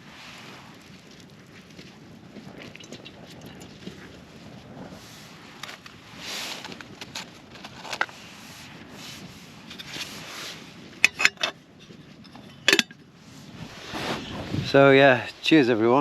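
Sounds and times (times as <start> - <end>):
wind gusting: 2.1 - 16.0.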